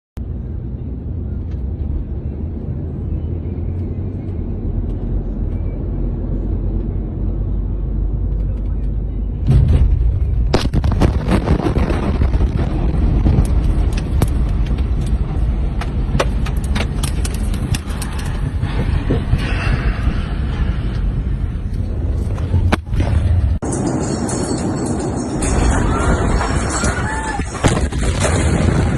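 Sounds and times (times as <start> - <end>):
steady low rumble: 0.2 - 28.9
sharp cracks and pops: 10.6 - 18.5.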